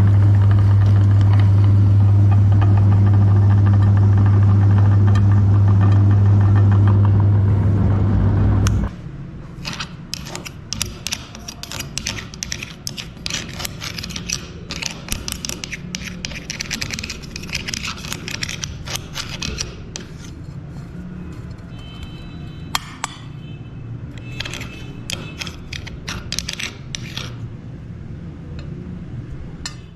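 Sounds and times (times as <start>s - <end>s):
crackly scraping: 9.5s - 21.9s, 24.2s - 27.5s.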